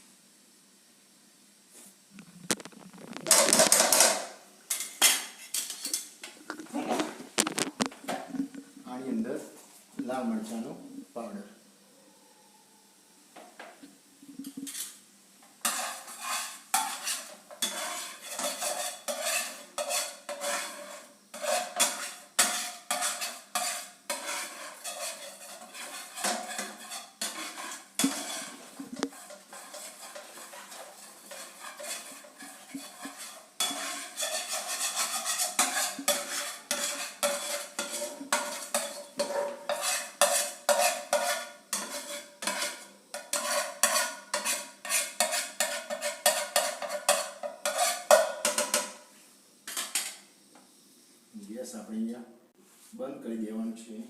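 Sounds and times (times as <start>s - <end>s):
metal utensil scraping a pan: 2.4s - 7.9s, 14.4s - 15.0s, 15.6s - 49.0s, 49.7s - 50.2s.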